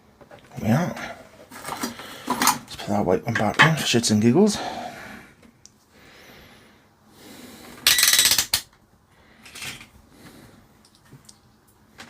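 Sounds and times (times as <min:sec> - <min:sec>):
parts scraping rattle: 0:01.2 - 0:04.0, 0:07.8 - 0:08.7, 0:09.4 - 0:10.0
light ticks of parts: 0:10.8 - 0:12.0.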